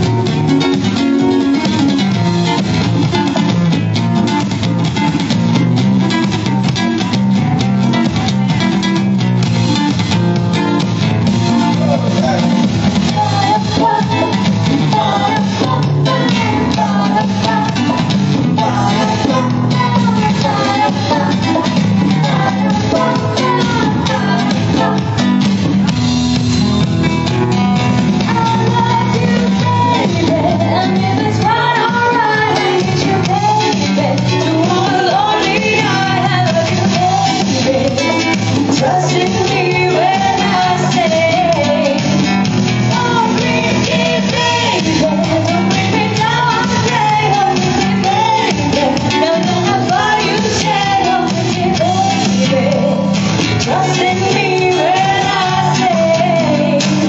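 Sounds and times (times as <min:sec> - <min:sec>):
bass line: 0:00.0 - 0:57.0
guitar accompaniment: 0:00.0 - 0:57.0
person singing: 0:11.5 - 0:25.4, 0:28.2 - 0:42.2, 0:42.9 - 0:57.0.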